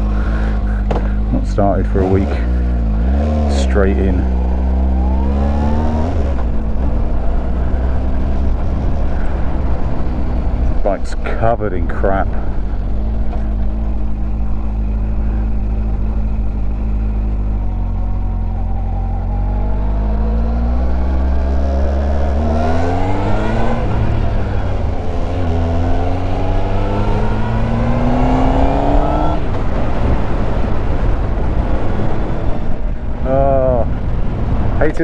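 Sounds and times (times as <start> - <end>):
motorcycle engine accelerating: 0.0 - 35.0.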